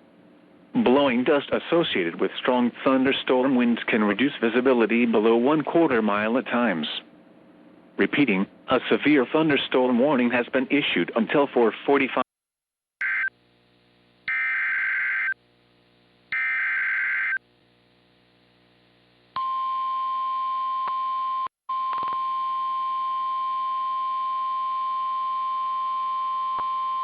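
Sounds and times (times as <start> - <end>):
screechy digital data bursts: 14.3 - 15.4.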